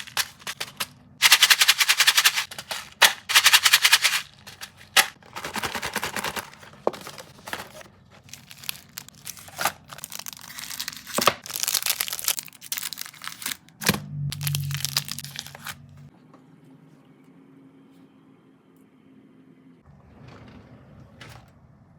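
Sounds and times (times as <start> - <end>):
plastic wrappers crinkling: 0.0 - 15.8.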